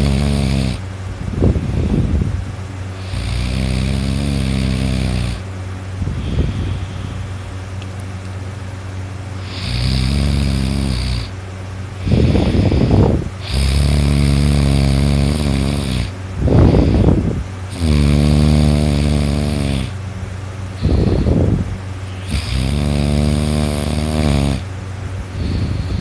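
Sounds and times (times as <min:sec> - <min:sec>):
man snoring loudly: 0:00.0 - 0:00.8, 0:03.0 - 0:05.5, 0:09.4 - 0:11.3, 0:12.0 - 0:20.0, 0:20.8 - 0:24.7
rough breaths: 0:03.0 - 0:07.5, 0:12.0 - 0:20.0, 0:20.7 - 0:24.7, 0:25.3 - 0:26.0.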